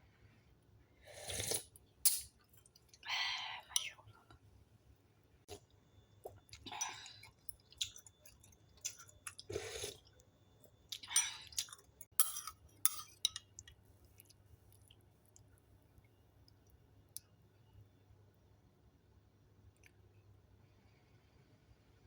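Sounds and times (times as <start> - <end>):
spoon clinking against bowl: 2.1 - 2.4, 11.1 - 13.5.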